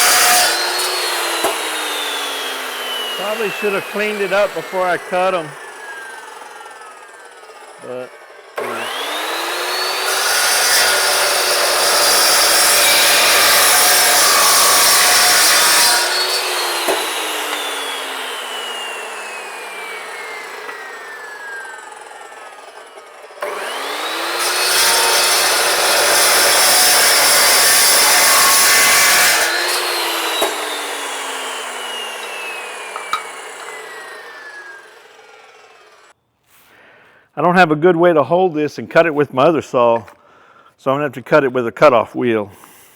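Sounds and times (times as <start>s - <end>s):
power saw cutting steel: 0.0s - 36.2s.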